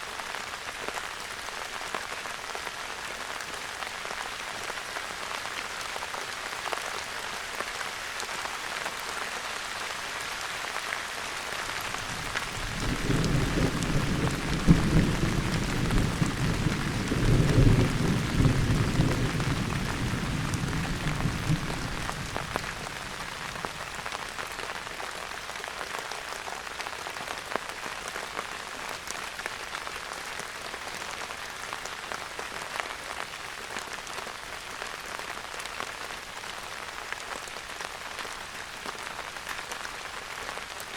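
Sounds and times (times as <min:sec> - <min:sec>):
steady rain: 0:00.0 - 0:40.9
distant thunder rumbling: 0:12.6 - 0:23.7.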